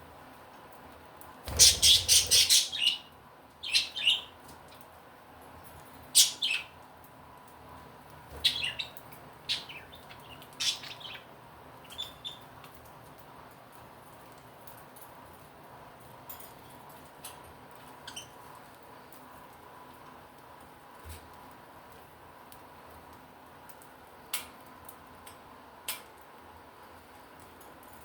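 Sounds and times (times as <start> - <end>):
budgerigars chirping: 1.5 - 3.1, 8.4 - 11.2.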